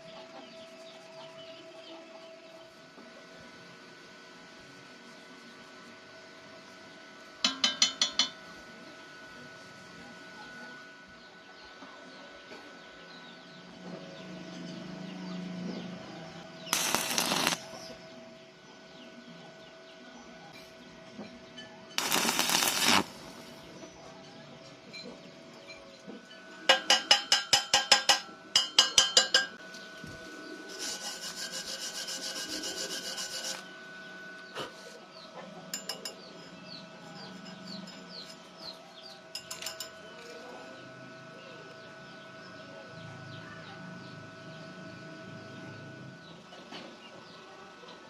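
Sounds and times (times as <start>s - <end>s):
metal scraping: 16.8s - 17.9s, 22.0s - 23.6s, 30.6s - 33.7s.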